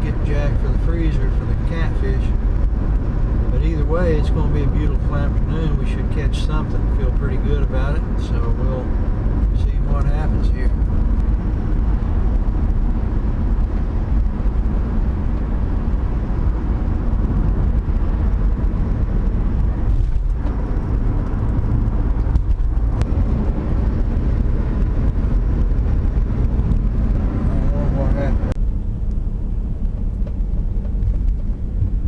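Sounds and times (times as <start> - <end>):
car driving rumble: 0.0 - 32.0.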